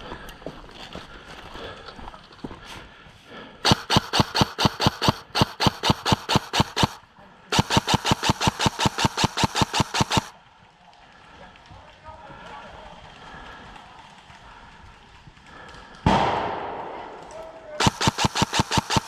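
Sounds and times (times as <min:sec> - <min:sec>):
airsoft gun firing rapidly: 0:03.6 - 0:10.3, 0:17.7 - 0:19.0.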